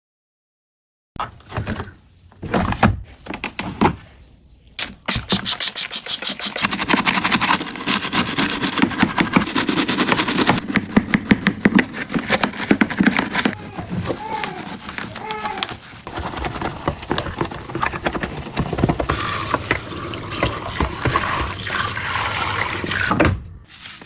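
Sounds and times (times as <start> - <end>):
knocks and handling sounds: 1.2 - 21.6, 23.0 - 24.0
fast scrubbing strokes: 5.2 - 16.4.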